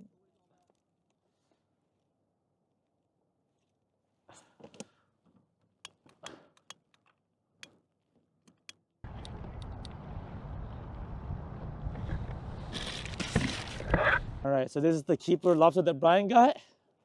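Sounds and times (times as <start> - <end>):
wind noise: 9.1 - 14.4.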